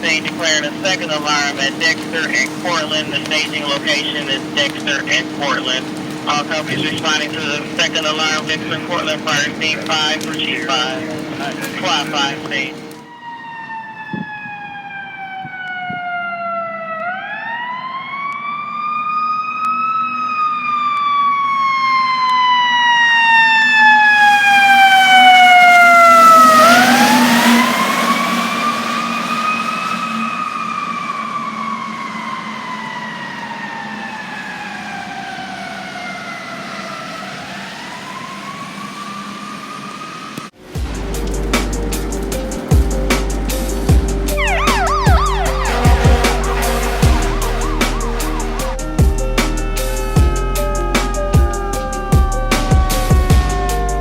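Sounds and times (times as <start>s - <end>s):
fire truck siren wailing: 0.0s - 54.0s
rushing noise: 34.3s - 54.0s.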